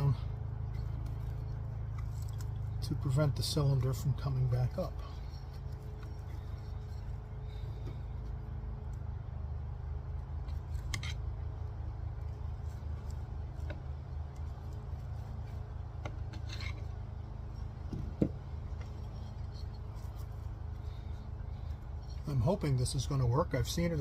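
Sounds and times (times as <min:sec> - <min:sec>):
steady low hum: 0:00.0 - 0:24.0
small clicks and scrapes: 0:00.6 - 0:02.9, 0:03.7 - 0:09.0, 0:10.4 - 0:11.4, 0:12.2 - 0:22.3.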